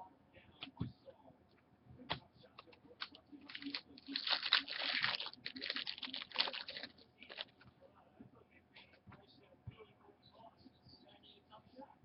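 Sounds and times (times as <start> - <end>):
foil wrapper crinkling: 3.0 - 7.6.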